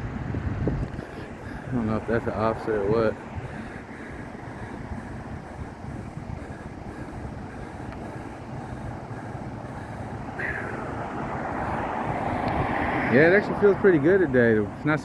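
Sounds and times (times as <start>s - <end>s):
wind noise on microphone: 0.0s - 9.0s, 10.4s - 13.2s
vehicle rumble: 0.0s - 15.0s.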